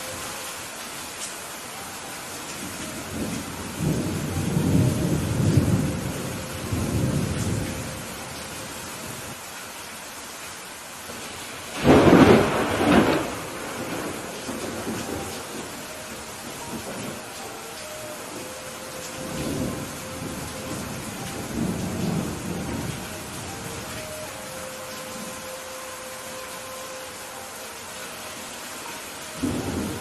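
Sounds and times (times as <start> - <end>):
steady rain: 0.0 - 30.0
rolling thunder: 11.7 - 15.8, 19.1 - 23.8
sharp thunderclap: 11.8 - 15.0.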